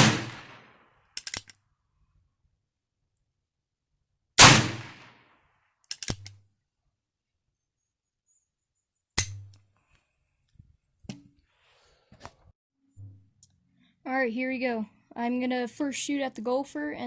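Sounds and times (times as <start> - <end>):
sharp metallic clicks: 1.2 - 1.6, 5.8 - 6.4.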